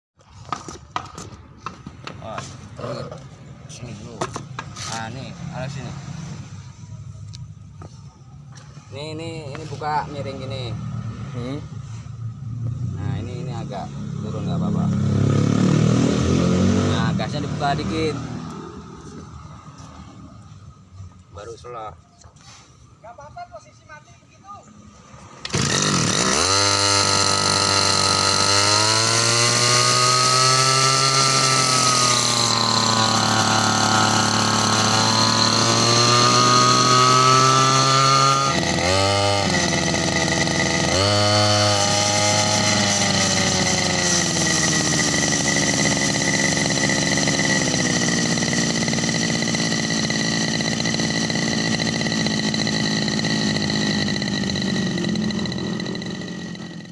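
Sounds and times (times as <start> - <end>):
brush cutter engine running: 25.4 - 56.9.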